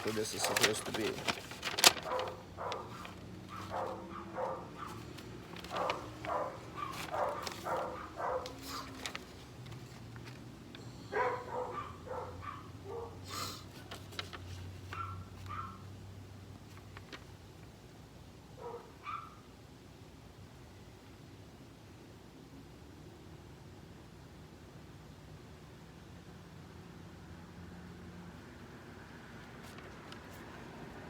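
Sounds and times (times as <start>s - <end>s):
dog barking: 2.0s - 9.0s, 11.1s - 13.4s, 14.9s - 15.9s, 18.6s - 19.5s.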